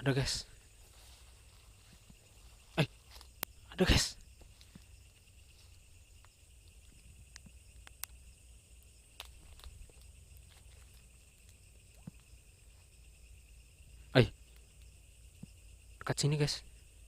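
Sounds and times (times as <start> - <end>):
night insects chirring: 0.0 - 17.0
sharp ticks: 3.1 - 3.7, 6.2 - 10.5, 14.3 - 16.2.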